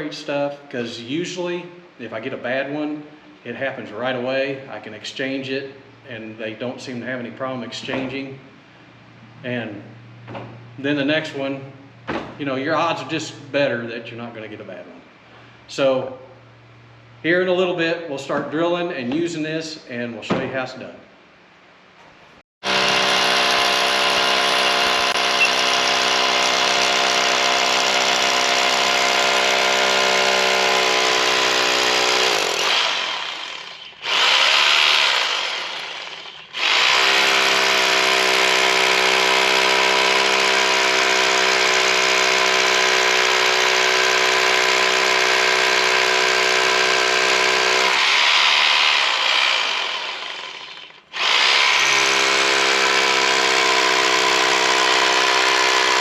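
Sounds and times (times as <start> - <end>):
hammer drill drilling into wall: 22.6 - 56.0.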